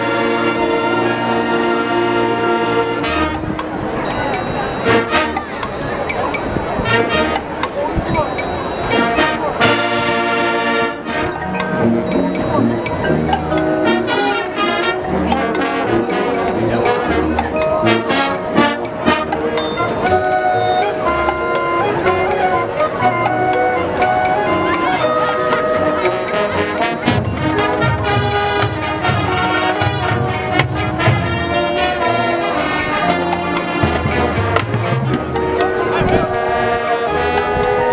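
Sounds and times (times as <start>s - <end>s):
brass sustained chords: 0.0s - 4.1s, 4.8s - 5.6s, 6.8s - 7.6s, 8.9s - 37.9s
low brass: 0.0s - 4.1s, 4.8s - 5.7s, 6.7s - 7.8s, 8.9s - 37.9s
marching band playing: 0.0s - 37.9s
percussion hits: 11.0s - 37.8s.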